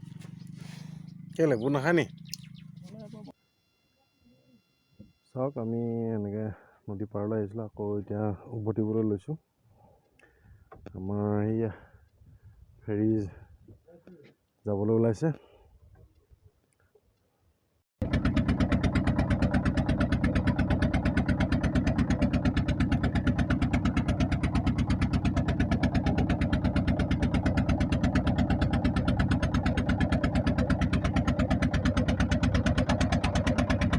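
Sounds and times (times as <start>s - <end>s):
boat engine running: 0.0s - 3.3s, 18.0s - 33.9s.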